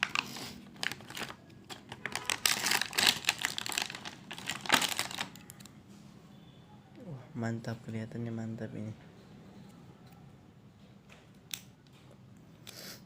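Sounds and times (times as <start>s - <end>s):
packaging rustling and crinkling: 0.0s - 5.7s.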